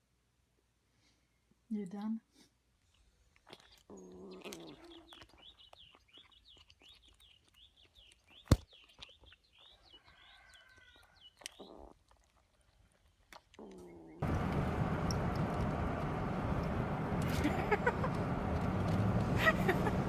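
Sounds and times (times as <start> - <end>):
small bird chirping: 2.8 - 11.9.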